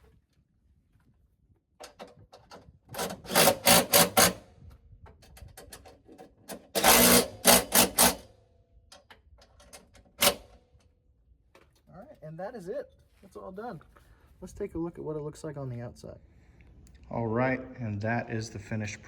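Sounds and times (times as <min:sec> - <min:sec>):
ratchet wrench clicking: 0:06.8 - 0:08.2.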